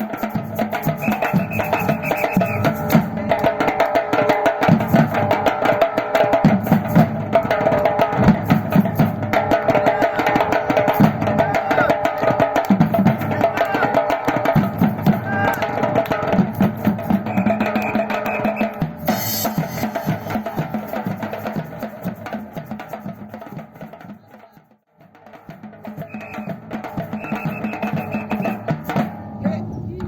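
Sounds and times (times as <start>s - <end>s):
percussion ensemble playing: 0.0s - 30.0s.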